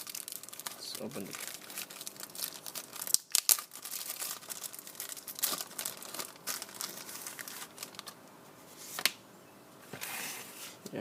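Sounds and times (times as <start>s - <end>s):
packaging crinkling: 0.0s - 8.2s.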